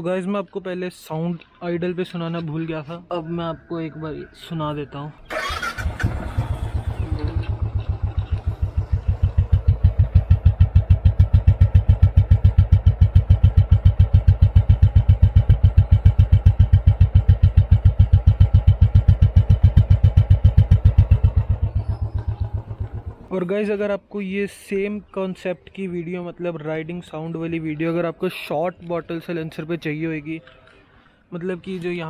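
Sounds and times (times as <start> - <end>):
motorcycle engine idling: 5.2 - 23.4.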